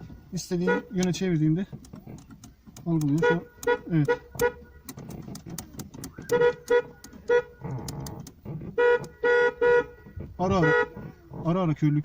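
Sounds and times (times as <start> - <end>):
car horn toots: 0.6 - 1.2, 3.0 - 4.9, 6.0 - 11.2
horn pad clicks: 1.8 - 9.3.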